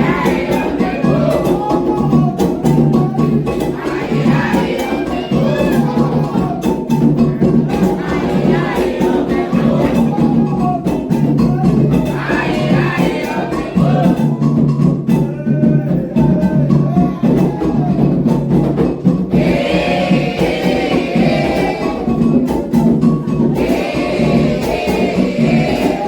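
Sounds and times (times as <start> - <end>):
group of voices chanting: 0.0 - 11.0, 11.9 - 14.4, 19.3 - 22.5, 23.3 - 26.0
hand drums beating: 0.0 - 26.0.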